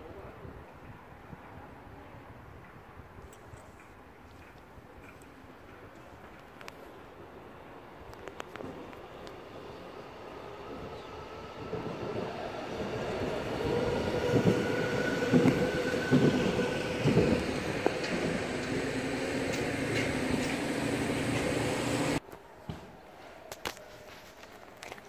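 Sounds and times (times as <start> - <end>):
electric train running past: 4.4 - 22.2.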